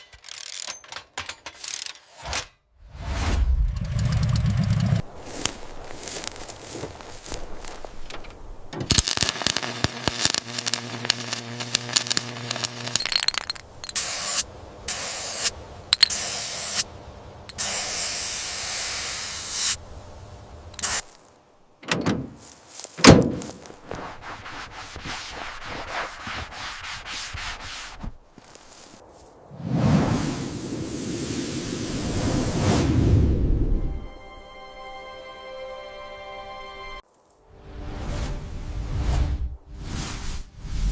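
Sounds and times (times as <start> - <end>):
power tool humming: 8.9 - 13.0
short bursts of hiss: 14.0 - 15.5, 16.1 - 16.9, 17.6 - 19.8, 20.8 - 21.2.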